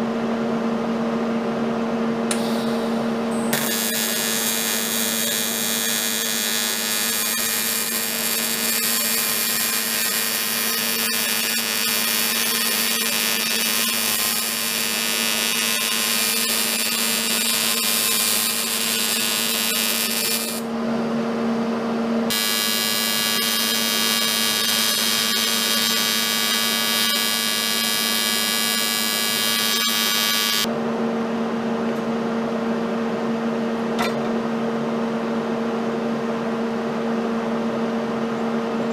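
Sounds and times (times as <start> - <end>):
welding arc hissing and whining: 2.3 - 20.7, 22.3 - 30.7
welding machine hum: 2.3 - 20.7, 22.3 - 30.7.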